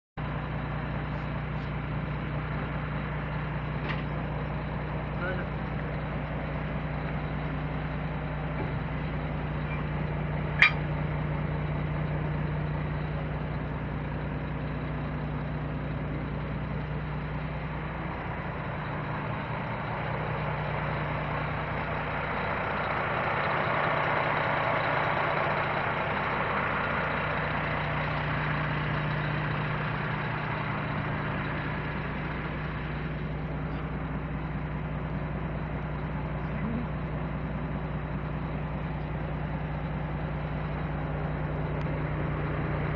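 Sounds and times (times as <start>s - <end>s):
truck diesel engine idling: 0.2s - 42.9s
sharp metallic click: 10.6s - 10.9s.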